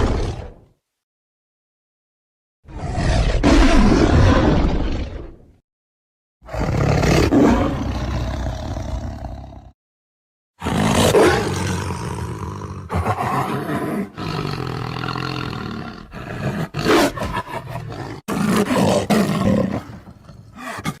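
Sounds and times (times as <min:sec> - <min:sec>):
lion roaring: 0:02.7 - 0:05.4, 0:06.5 - 0:09.7, 0:10.6 - 0:21.0.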